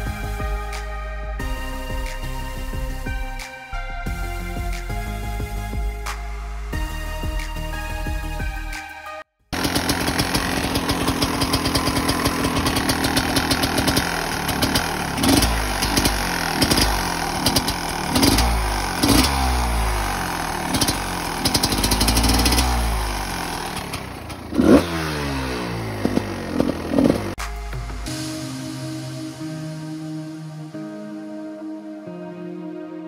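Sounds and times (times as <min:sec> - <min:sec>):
two-stroke engine revving: 0:09.6 - 0:27.4.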